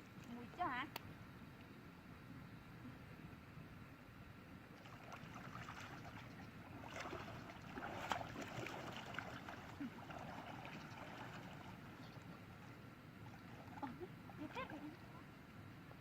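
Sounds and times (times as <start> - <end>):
water splashing and trickling: 4.7 - 15.2.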